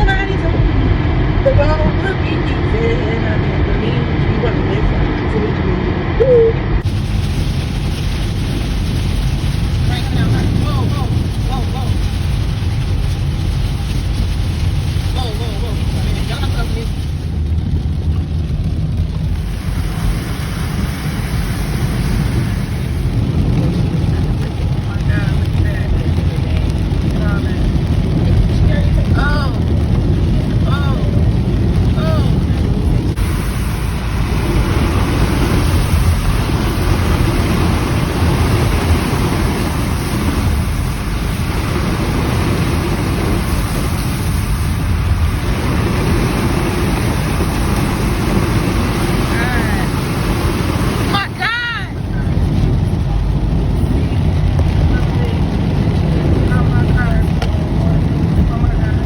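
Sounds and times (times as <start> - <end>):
car tyre and engine rumble: 0.0 - 59.0.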